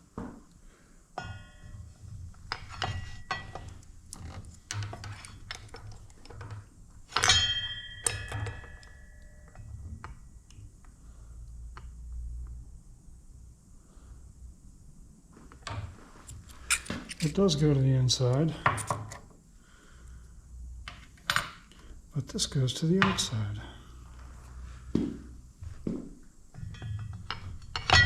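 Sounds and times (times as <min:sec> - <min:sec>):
ringing metal clink: 0:01.2 - 0:02.1, 0:07.2 - 0:09.8, 0:26.6 - 0:28.0
metal parts clinking: 0:16.6 - 0:17.4, 0:26.6 - 0:28.0.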